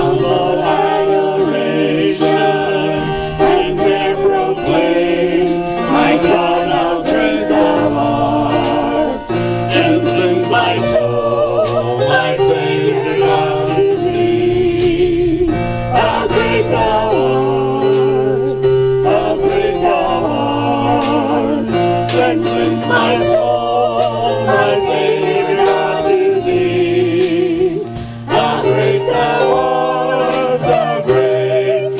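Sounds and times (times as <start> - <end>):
instrumental accompaniment: 0.0 - 31.9
voices singing worship song: 0.0 - 31.9.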